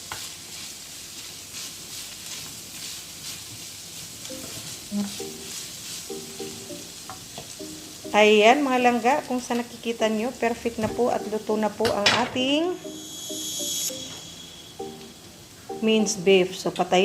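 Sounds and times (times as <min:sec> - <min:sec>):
meat sizzling in a frying pan: 0:00.0 - 0:11.8
faint background music: 0:04.3 - 0:17.0.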